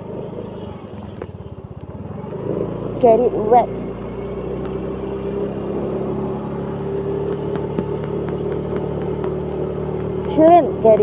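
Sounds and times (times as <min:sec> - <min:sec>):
motor scooter engine humming: 0:00.0 - 0:11.0.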